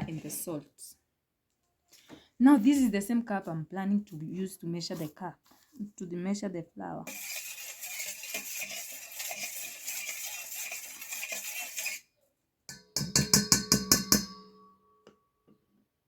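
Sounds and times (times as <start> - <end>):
flour hissing as poured: 7.1 - 12.0
sharp ringing taps: 12.7 - 15.2.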